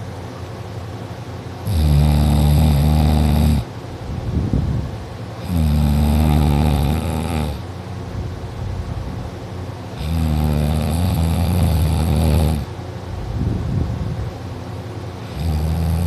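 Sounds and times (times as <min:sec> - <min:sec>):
person snoring loudly: 0:01.6 - 0:03.7, 0:05.4 - 0:07.6, 0:10.0 - 0:12.7, 0:15.2 - 0:16.0.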